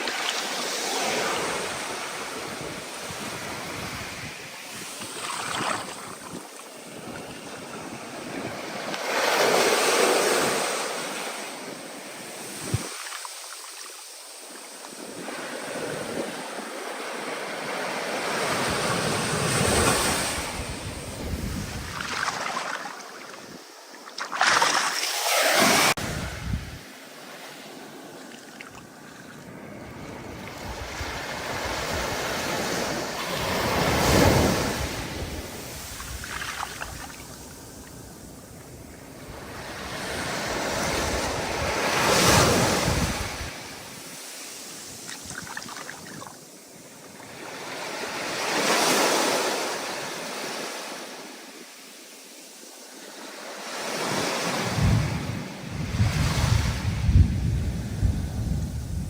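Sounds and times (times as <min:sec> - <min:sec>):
ocean waves breaking: 0:00.0 - 0:46.6.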